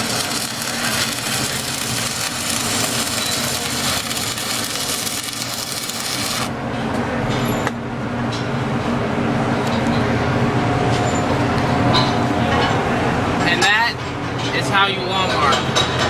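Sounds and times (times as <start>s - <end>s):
welding arc crackling and hissing: 0.0s - 6.6s.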